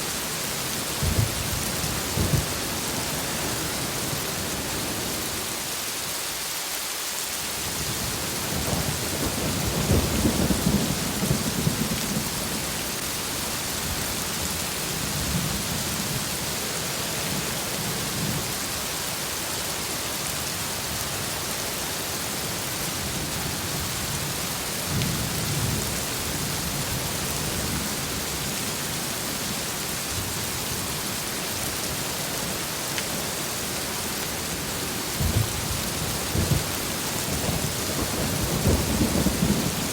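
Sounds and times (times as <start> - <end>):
heavy rain falling: 0.0 - 39.9
thunder rumbling: 1.0 - 5.2, 8.4 - 14.0, 35.1 - 39.9.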